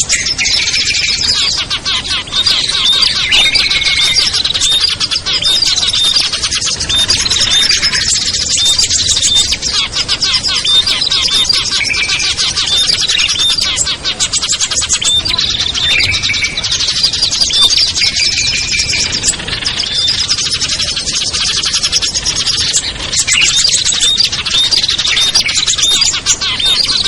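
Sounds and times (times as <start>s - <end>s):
songbirds chirping chorus: 0.0s - 27.0s.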